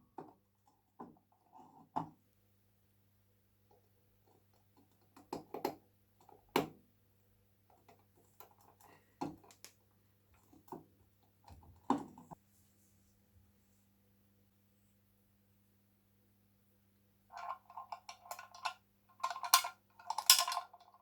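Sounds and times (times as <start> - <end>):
faint steady hum: 5.8 - 21.0.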